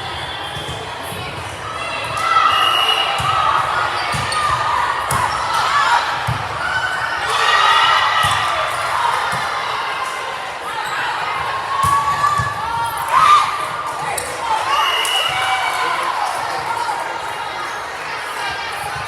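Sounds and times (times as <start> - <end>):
sneakers squeaking on court: 3.9 - 4.6.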